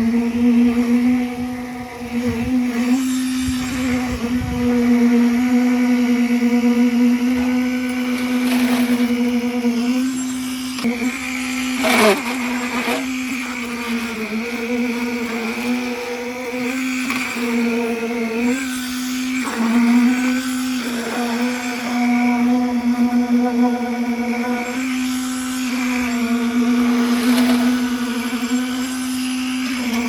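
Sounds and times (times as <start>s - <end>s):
motor humming: 0.0s - 30.0s.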